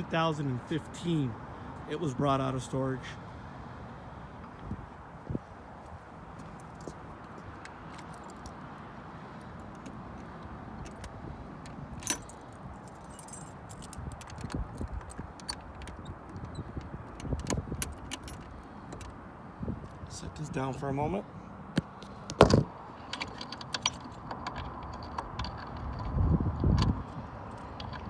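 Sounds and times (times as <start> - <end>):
keys jangling: 6.5 - 8.8, 9.4 - 19.1
knocks: 21.8 - 22.7.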